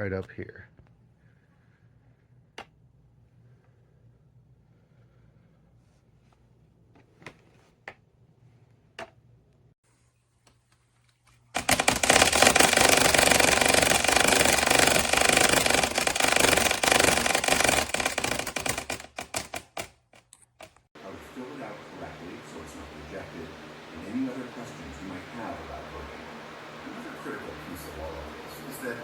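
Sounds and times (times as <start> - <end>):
box fan rattling clatter: 11.6 - 19.9.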